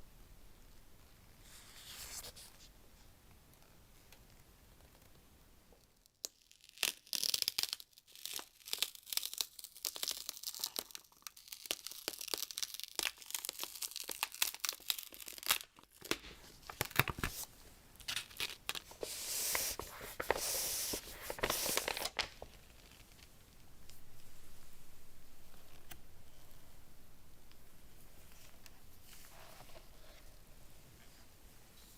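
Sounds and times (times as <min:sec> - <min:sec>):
packaging tearing and crinkling: 0:06.6 - 0:23.2.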